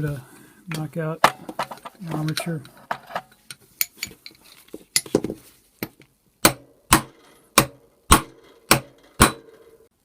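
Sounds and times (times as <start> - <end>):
hammer striking metal punch: 6.4 - 9.8.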